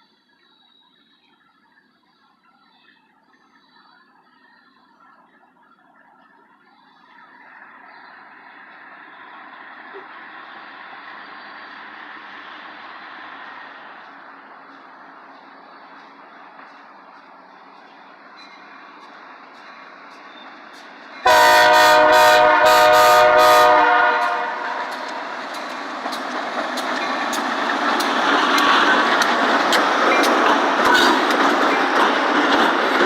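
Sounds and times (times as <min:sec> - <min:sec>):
train rumble: 0:00.0 - 0:33.0
locomotive air horn blast: 0:21.3 - 0:25.1.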